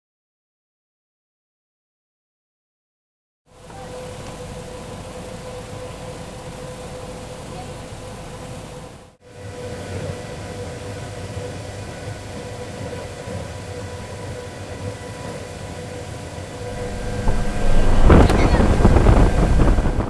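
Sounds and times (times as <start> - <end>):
blower fan whining: 16.0 - 20.0
wind blast on microphone: 16.5 - 20.0.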